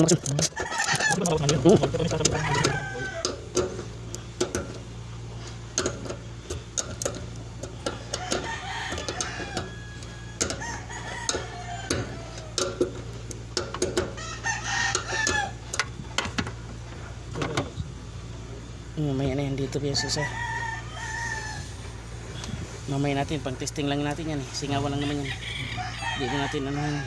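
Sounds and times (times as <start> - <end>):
chickens clucking: 0.0 - 16.8
steady low hum: 0.0 - 27.0
rooster crowing: 0.4 - 3.9, 7.8 - 13.2, 13.8 - 16.1, 19.8 - 22.0, 24.6 - 27.0.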